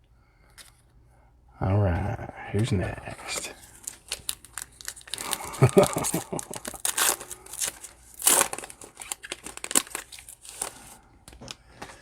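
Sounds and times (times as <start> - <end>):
plastic wrapper crinkling: 3.2 - 11.5.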